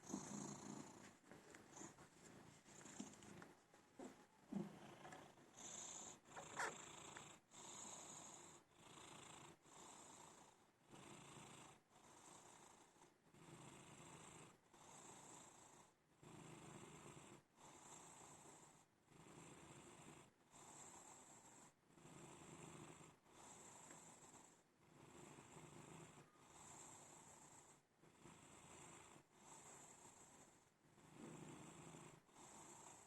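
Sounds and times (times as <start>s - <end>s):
pet snorting: 0.0s - 7.4s
pet snoring: 0.0s - 33.0s.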